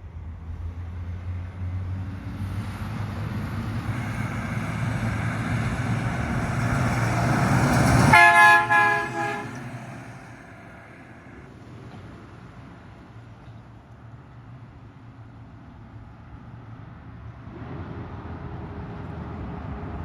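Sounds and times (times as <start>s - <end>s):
truck horn blast: 8.0s - 10.0s.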